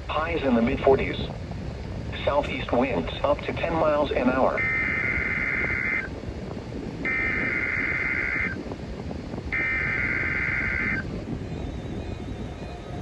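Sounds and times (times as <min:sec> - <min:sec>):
low radio hiss: 0:00.0 - 0:13.0
screeching digital data tones: 0:04.6 - 0:06.1, 0:07.0 - 0:08.6, 0:09.5 - 0:13.0.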